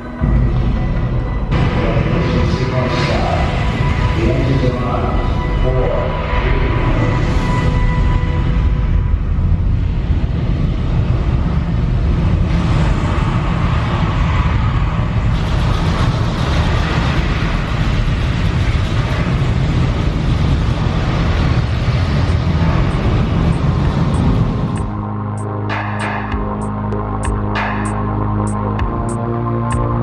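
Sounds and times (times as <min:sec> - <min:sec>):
rocket launch roar: 0:12.2 - 0:24.9.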